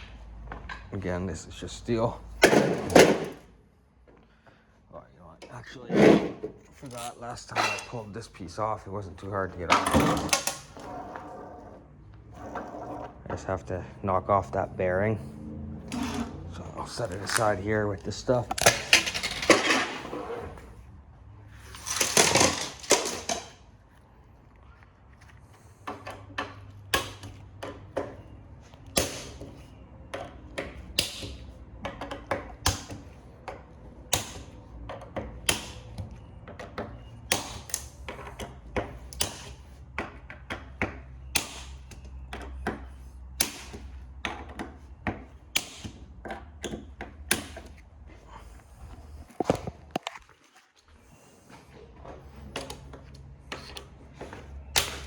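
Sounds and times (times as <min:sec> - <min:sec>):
hand tools clicking on metal: 0:37.2 - 0:39.6.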